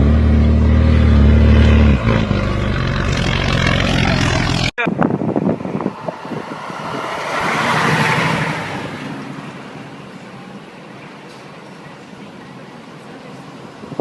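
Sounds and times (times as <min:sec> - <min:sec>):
heavy vehicle passing: 0:00.0 - 0:10.9.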